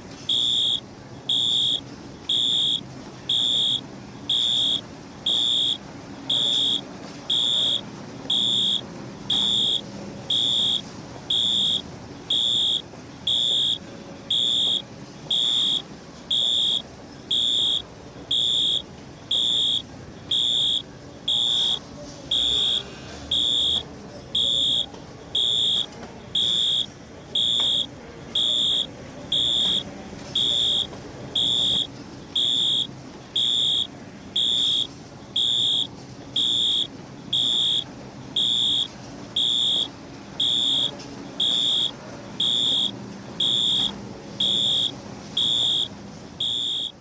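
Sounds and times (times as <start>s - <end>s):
fire alarm beeping: 0.2s - 47.0s.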